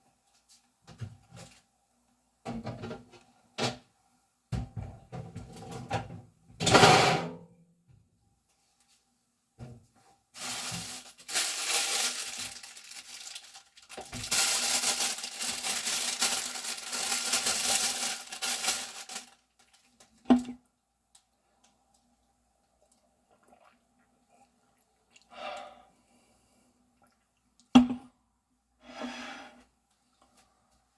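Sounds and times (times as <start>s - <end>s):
scraping crinkling handling: 10.4s - 20.2s.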